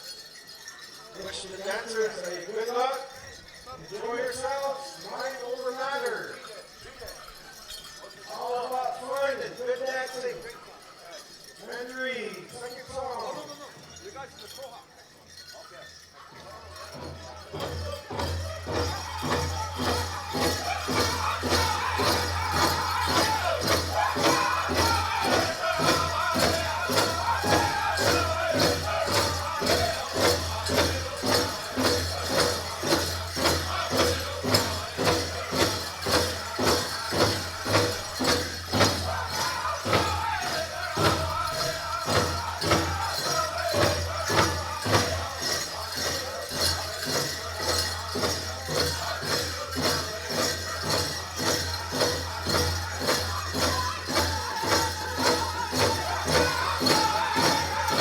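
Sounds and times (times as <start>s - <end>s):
drum group singing: 16.8s - 58.0s
big drum steady beat: 18.0s - 58.0s.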